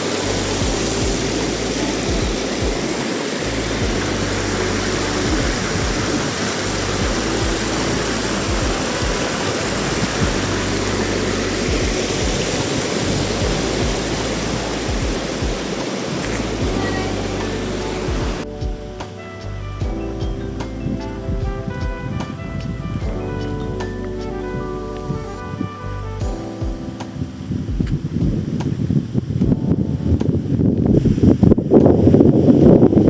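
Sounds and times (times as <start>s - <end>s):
rushing mountain water: 0.0s - 33.0s
low rumble: 0.2s - 26.4s.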